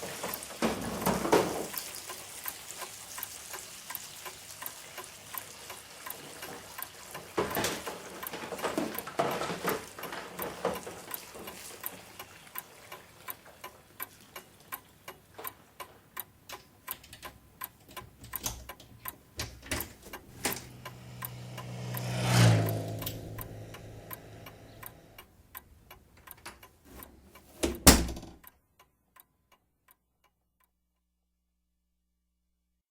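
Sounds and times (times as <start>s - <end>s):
clock ticking: 0.0s - 30.8s
low hum: 20.4s - 25.2s.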